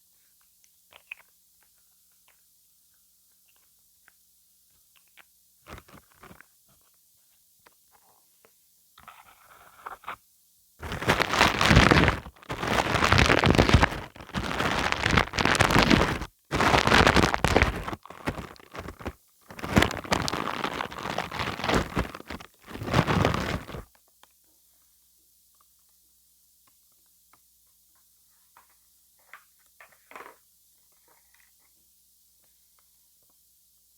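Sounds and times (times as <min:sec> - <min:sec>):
sticky glue crackles: 0:10.8 - 0:23.8.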